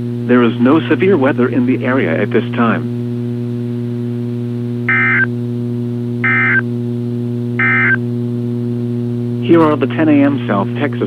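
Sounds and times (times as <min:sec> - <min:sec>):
steady electrical hum: 0:00.0 - 0:11.0
short data bursts: 0:04.9 - 0:05.3, 0:06.2 - 0:06.6, 0:07.6 - 0:08.0.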